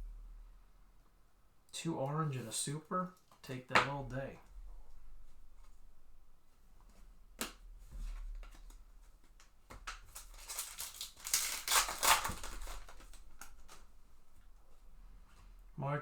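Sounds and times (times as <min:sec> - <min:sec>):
foil wrapper tearing: 0:10.0 - 0:13.8
wrapper crinkling: 0:10.0 - 0:13.9.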